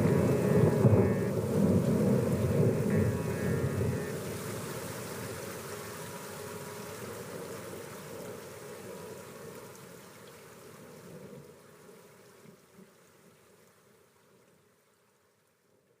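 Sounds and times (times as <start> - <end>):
heavy rain: 0.0 - 15.0
running water: 0.0 - 15.6.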